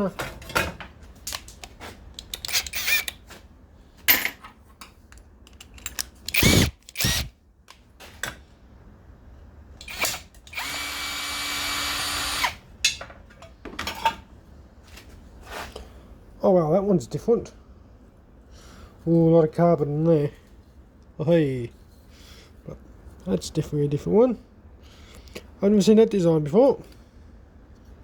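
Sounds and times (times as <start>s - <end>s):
tools and parts clicking: 1.2s - 3.2s, 4.1s - 7.3s
power driver running: 2.3s - 3.2s, 6.3s - 7.3s.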